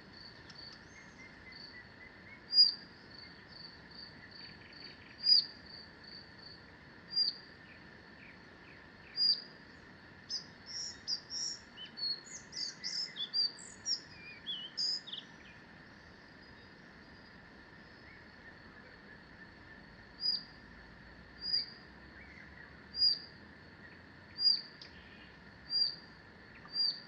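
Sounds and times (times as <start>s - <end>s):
sharp down-slurred bird calls: 0.5s - 3.4s, 4.2s - 5.6s, 7.1s - 9.6s, 10.3s - 15.6s, 20.2s - 20.5s, 21.4s - 27.0s
high pulsing chirp: 9.1s - 9.5s, 20.2s - 20.5s, 25.7s - 27.0s
quick varied birdsong: 23.9s - 27.0s.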